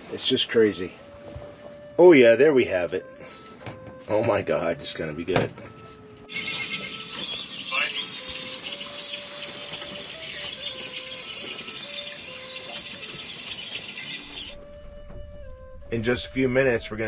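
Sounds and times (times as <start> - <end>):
chorus of shrilling insects: 6.3 - 14.6.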